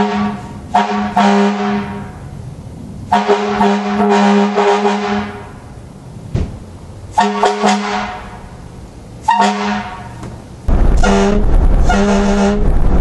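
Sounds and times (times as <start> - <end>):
air horn blasts: 0.0 - 2.3, 3.1 - 5.6, 7.1 - 8.5, 9.2 - 10.2, 10.9 - 12.7.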